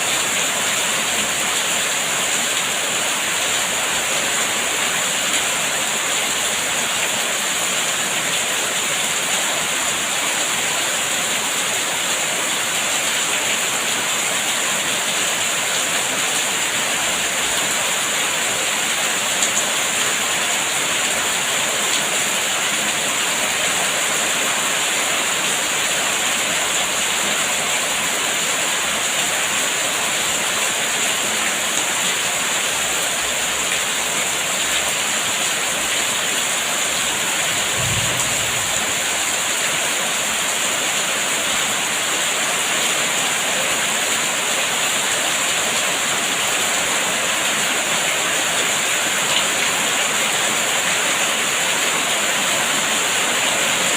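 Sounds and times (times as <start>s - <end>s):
heavy rain: 0.0s - 53.9s
low thud: 37.6s - 39.2s.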